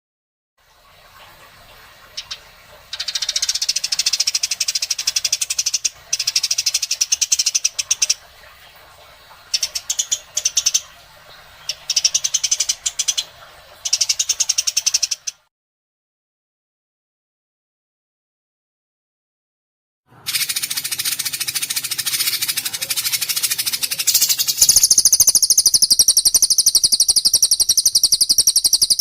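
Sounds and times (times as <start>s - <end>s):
harsh rattling bird calls: 2.1s - 15.5s, 20.2s - 29.0s.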